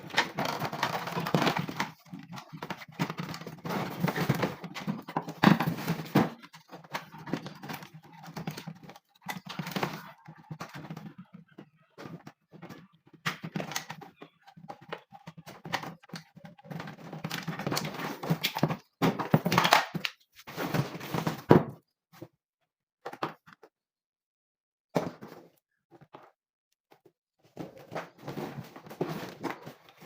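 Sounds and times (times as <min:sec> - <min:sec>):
parts knocking and scraping: 0:00.0 - 0:21.5.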